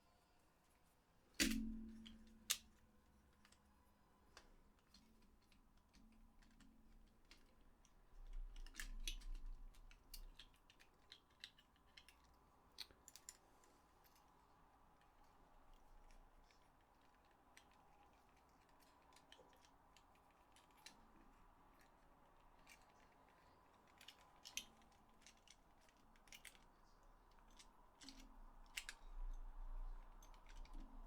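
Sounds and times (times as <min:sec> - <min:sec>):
clicks of plastic parts handled: 0:04.3 - 0:13.4, 0:22.6 - 0:31.0.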